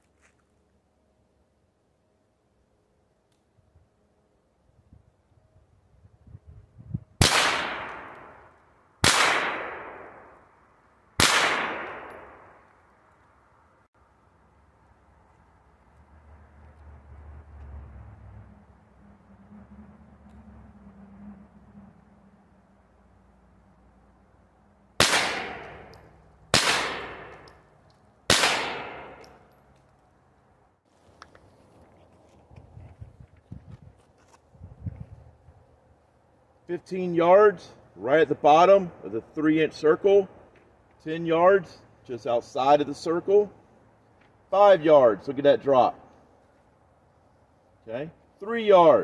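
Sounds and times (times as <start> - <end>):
gunshots echoing: 7.2 - 8.4, 9.0 - 10.4, 11.2 - 12.6, 25.0 - 27.6, 28.3 - 29.5.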